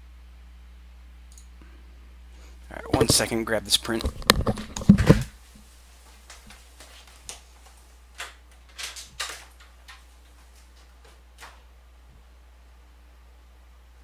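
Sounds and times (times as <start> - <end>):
loud clattering movement: 2.8 - 5.4
faint clicks and rustles: 2.8 - 11.7.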